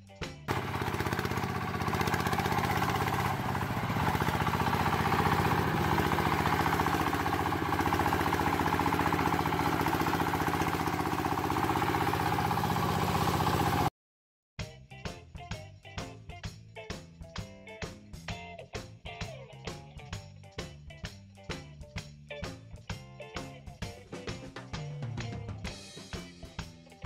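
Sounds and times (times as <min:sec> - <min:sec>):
small engine idling: 0:00.5 - 0:13.9.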